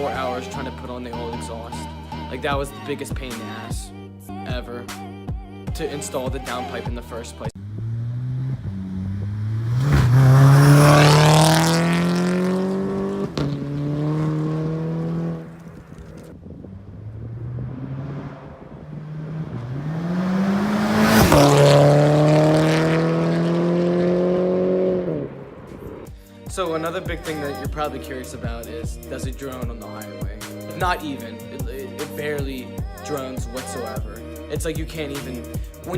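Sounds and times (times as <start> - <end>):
car exhaust accelerating: 7.4 - 26.2
exhaust cracks: 7.6 - 26.2.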